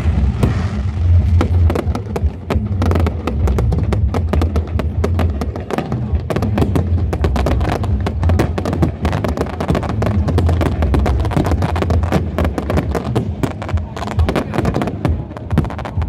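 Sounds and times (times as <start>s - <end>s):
continuous low rumble: 0.0s - 16.0s
fireworks bangs and crackles: 0.0s - 16.0s.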